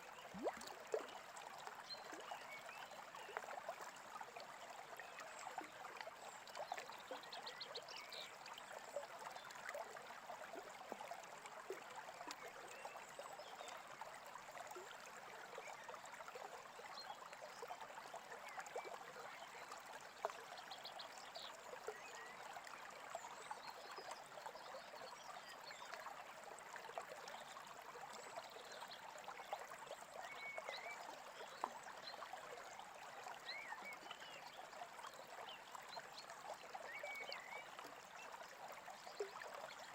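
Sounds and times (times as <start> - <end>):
stream babbling: 0.0 - 39.9.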